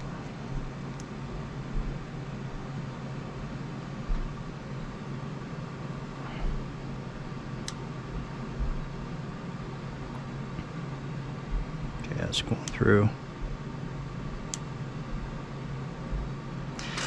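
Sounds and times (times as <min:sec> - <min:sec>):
low room hum: 0:00.0 - 0:17.0
small parts clicking and bumping: 0:16.8 - 0:17.0.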